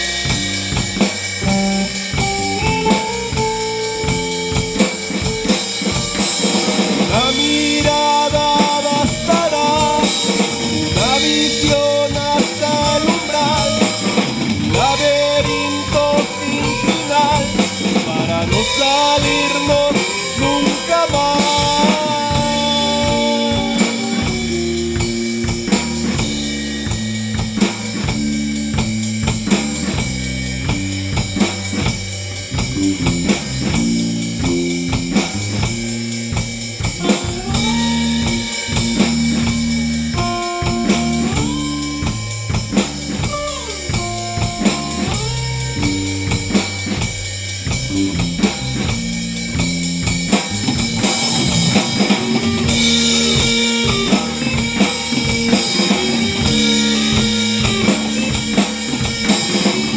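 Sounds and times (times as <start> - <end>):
bass guitar: 0.0 - 59.9
drum kit beat: 0.0 - 59.9
electric guitar: 0.0 - 59.9
lead guitar sliding between notes: 5.3 - 26.3.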